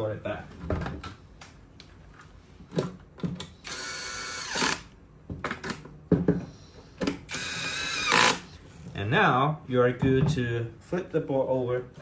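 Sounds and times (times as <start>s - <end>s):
electric screwdriver whine: 3.6s - 4.9s, 7.3s - 8.5s
screws and parts clicking: 7.3s - 8.5s.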